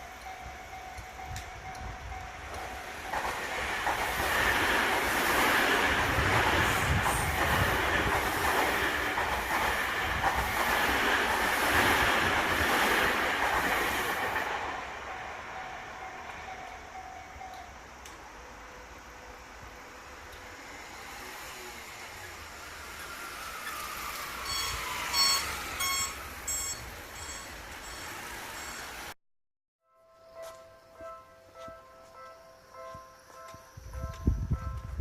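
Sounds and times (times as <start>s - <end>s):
level crossing warning bell: 0.0s - 3.7s, 15.0s - 17.9s, 24.4s - 29.1s.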